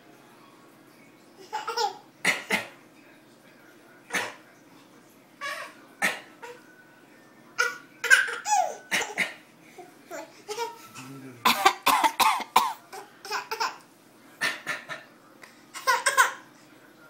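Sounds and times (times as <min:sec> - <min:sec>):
baby laughing: 0:01.4 - 0:02.1, 0:07.6 - 0:09.3, 0:10.1 - 0:10.8, 0:12.9 - 0:13.8, 0:15.8 - 0:16.5
baby fake coughing: 0:01.6 - 0:02.8, 0:04.1 - 0:04.4, 0:06.0 - 0:06.6, 0:07.6 - 0:09.4, 0:11.4 - 0:13.8, 0:15.8 - 0:16.4.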